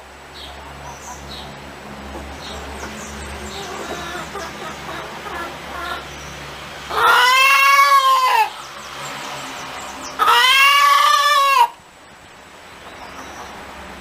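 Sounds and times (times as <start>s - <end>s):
chicken calling: 3.4s - 6.1s, 6.9s - 8.6s, 10.0s - 11.8s.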